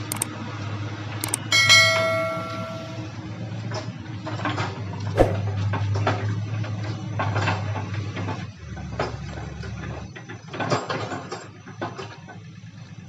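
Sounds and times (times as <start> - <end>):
metal tracks clanking on asphalt: 1.5 - 3.1.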